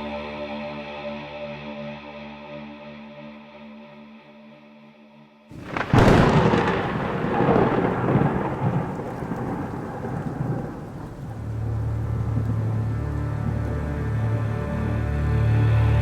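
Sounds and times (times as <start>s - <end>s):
droning ambient music: 0.0s - 5.4s, 11.1s - 16.0s
thunder crack and rumble: 5.5s - 14.6s
rain hissing: 5.5s - 16.0s.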